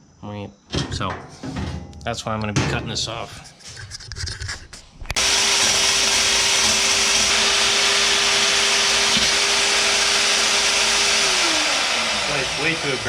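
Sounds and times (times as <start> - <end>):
power cut-off tool cutting metal: 5.2 - 13.0.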